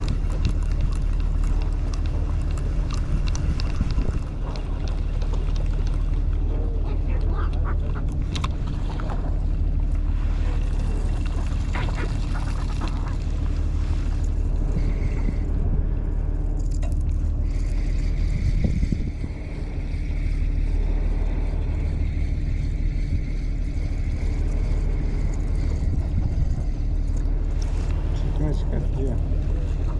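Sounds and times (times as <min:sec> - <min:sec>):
boat engine humming: 0:00.0 - 0:29.9
seagulls calling: 0:06.8 - 0:08.4.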